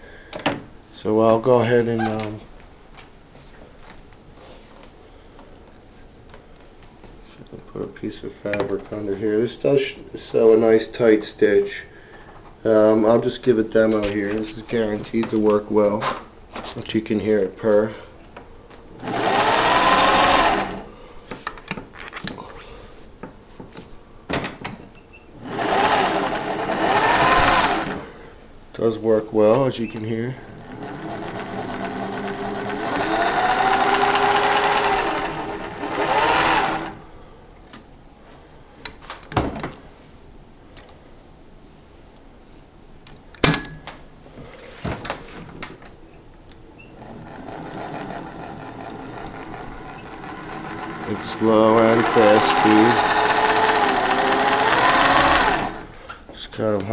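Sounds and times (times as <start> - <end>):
sewing machine purring: 19.0 - 20.9, 25.4 - 28.2, 30.5 - 37.0, 46.9 - 56.0.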